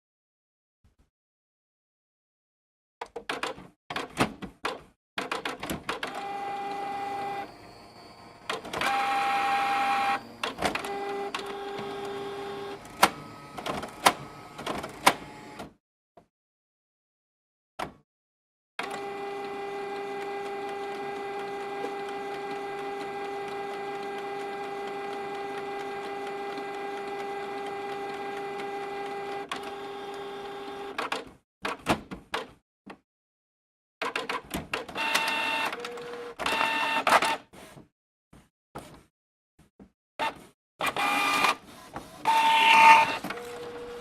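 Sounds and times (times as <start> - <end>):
printer motor whirring: 6.1 - 15.7, 40.8 - 44.0.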